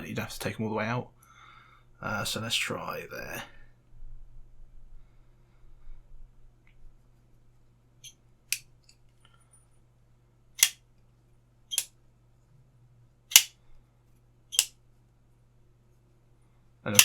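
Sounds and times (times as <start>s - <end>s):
pocket knife blade snapping: 13.3s - 13.5s, 14.5s - 14.7s.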